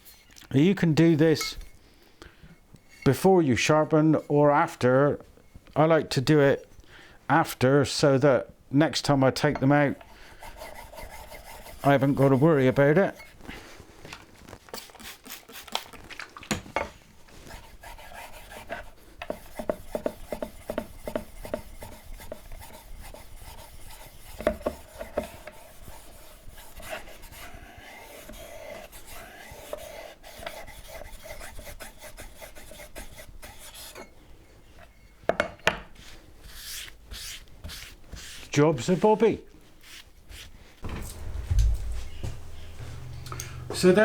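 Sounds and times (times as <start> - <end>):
whetstone scraping back and forth: 9.6 - 13.5, 17.5 - 34.1
sharp knocks: 40.8 - 43.8.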